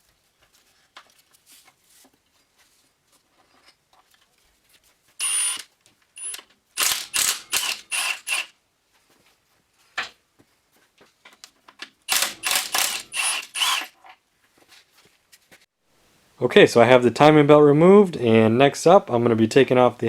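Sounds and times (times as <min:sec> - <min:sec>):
ratchet wrench clicking: 0:06.2 - 0:08.5, 0:12.1 - 0:13.9.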